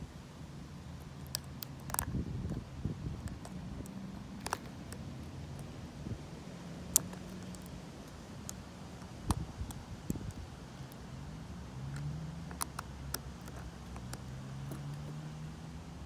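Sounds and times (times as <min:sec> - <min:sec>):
lock pick clicks: 0:01.0 - 0:02.6, 0:03.2 - 0:05.7, 0:06.9 - 0:11.0, 0:11.9 - 0:15.2
muffled wind rumble on microphone: 0:02.0 - 0:04.4, 0:05.8 - 0:06.3, 0:09.2 - 0:10.6.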